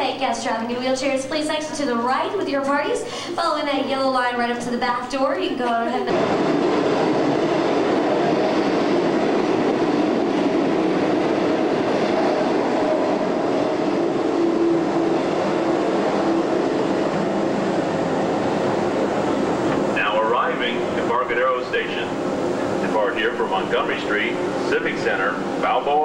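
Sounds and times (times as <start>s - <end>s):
ride train rumbling: 0.0s - 26.0s.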